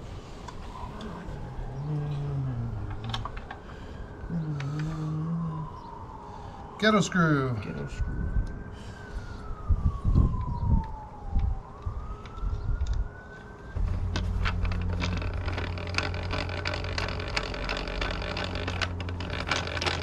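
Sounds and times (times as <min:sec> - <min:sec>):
emergency vehicle siren wailing: 0:00.0 - 0:20.0
scattered clicks and knocks: 0:13.8 - 0:20.0
steady machine hum: 0:13.8 - 0:20.0.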